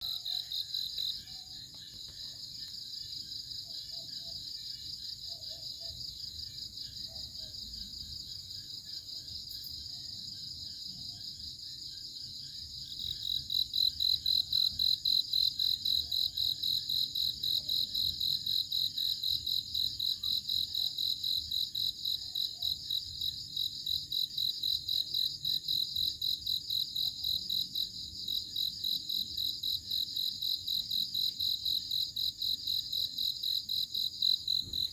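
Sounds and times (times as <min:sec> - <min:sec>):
crickets chirping: 0:00.0 - 0:34.9.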